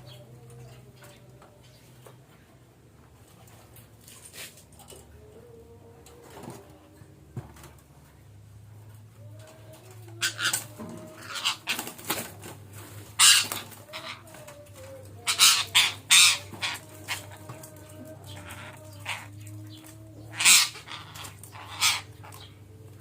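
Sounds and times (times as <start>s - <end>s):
steady low hum: 0.0s - 23.0s
parakeets squawking: 10.1s - 22.6s.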